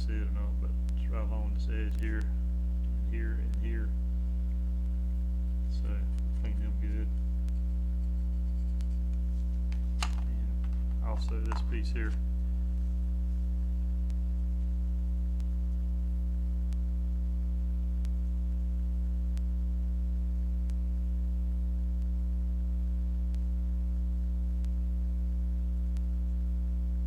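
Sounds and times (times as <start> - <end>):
faint regular ticks: 0.0 - 19.6
electrical mains hum: 0.0 - 27.0.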